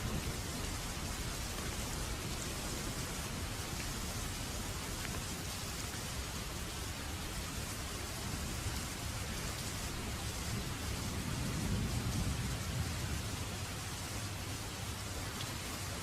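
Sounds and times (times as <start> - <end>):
steady rain falling: 0.0 - 16.0.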